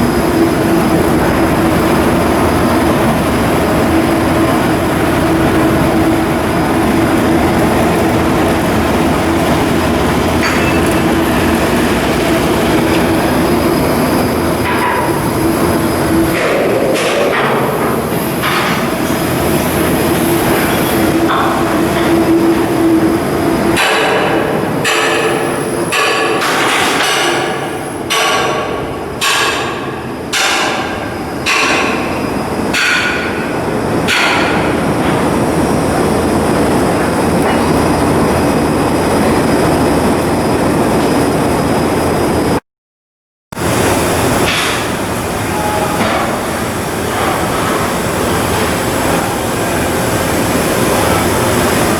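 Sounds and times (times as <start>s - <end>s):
machinery drone with hum: 0.0s - 42.6s, 43.5s - 51.9s
ringing metal strikes: 10.4s - 11.2s.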